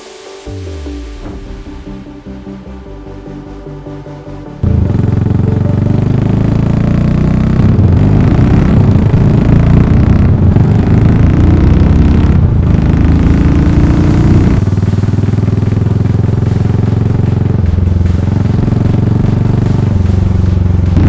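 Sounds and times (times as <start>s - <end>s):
motorcycle engine running loud: 4.6s - 21.0s.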